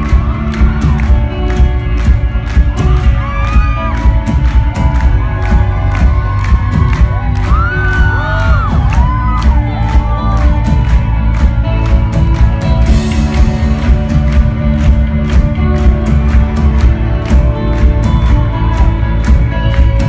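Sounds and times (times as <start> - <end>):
audience whooping and cheering: 0.0 - 13.4
live rock band: 0.0 - 20.0.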